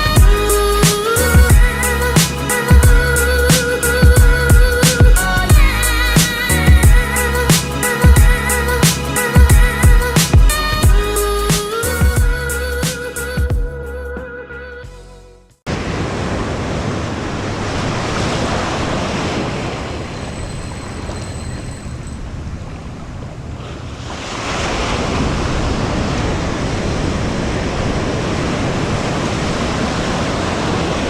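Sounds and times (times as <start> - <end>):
intro music: 0.0 - 14.4
ocean surf washing: 15.7 - 31.0
wind buffeting microphone: 16.3 - 31.0.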